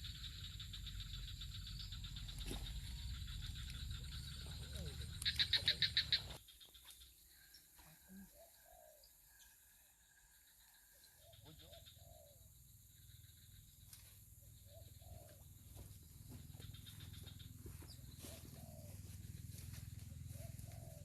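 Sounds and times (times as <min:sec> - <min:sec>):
dove cooing: 0:08.2 - 0:09.0, 0:11.3 - 0:12.4, 0:14.7 - 0:15.4, 0:18.2 - 0:19.1, 0:20.2 - 0:21.0.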